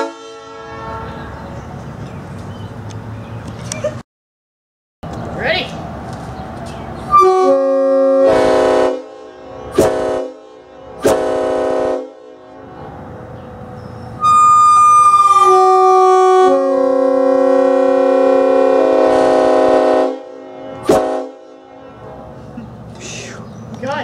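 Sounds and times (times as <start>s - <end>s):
locomotive air horn: 0.0s - 1.4s, 7.1s - 13.0s, 14.2s - 22.5s.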